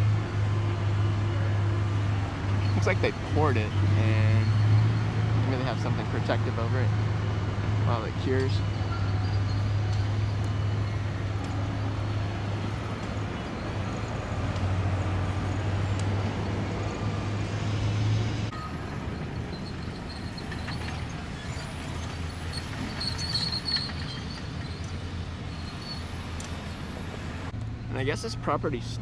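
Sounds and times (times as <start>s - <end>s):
low engine drone: 0.0s - 29.0s
traffic hum: 0.0s - 29.0s.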